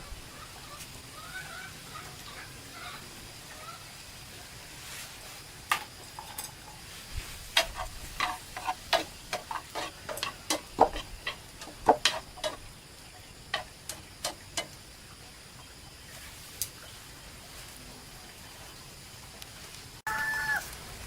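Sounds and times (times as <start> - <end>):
utensil clinking against cookware: 7.6 - 12.7.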